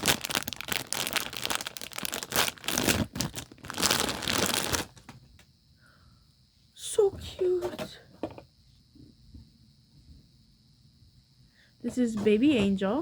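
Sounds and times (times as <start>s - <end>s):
plastic packaging crinkling: 0.0s - 5.2s.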